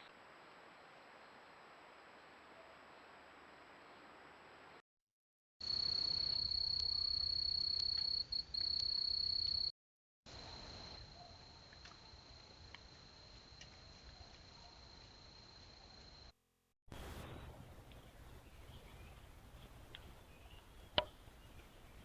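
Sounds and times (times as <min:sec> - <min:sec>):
faint hiss: 0:16.9 - 0:22.0.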